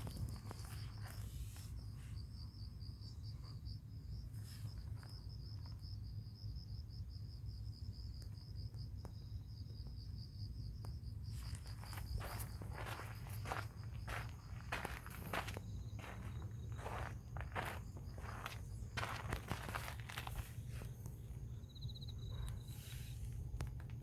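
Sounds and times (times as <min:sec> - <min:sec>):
cricket trilling: 0:00.0 - 0:24.0.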